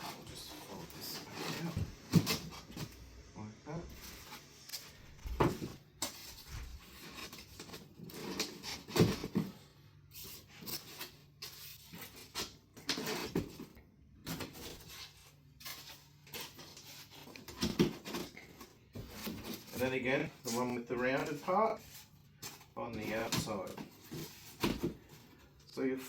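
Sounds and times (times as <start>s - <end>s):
cardboard scraping and knocking: 0.0s - 3.0s, 5.1s - 9.6s, 15.8s - 25.3s.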